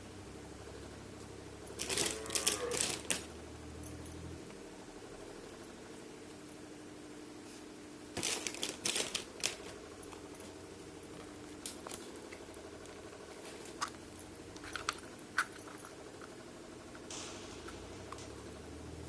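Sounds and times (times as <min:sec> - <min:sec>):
steady low hum: 0:00.0 - 0:19.0
plastic packaging crinkling: 0:01.8 - 0:03.3, 0:08.2 - 0:09.8
plastic pieces clicking: 0:01.8 - 0:03.3, 0:08.2 - 0:09.8.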